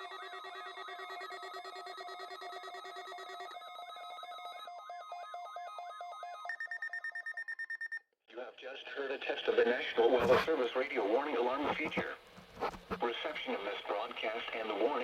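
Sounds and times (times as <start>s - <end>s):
pulsing alarm beep: 0.0s - 8.0s
steady alarm tone: 0.0s - 8.0s
warbling electronic alarm chirps: 0.0s - 8.0s.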